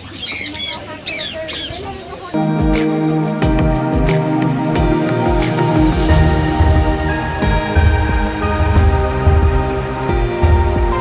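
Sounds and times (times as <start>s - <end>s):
kick drum beat: 2.4s - 11.0s
synth chords: 2.4s - 11.0s.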